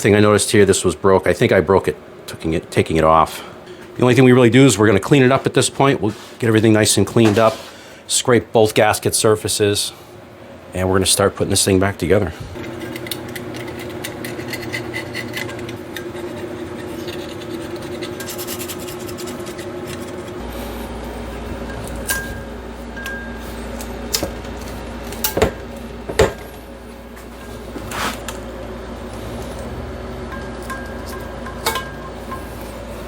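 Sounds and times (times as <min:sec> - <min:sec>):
scraping gasket off metal: 0:12.6 - 0:20.9.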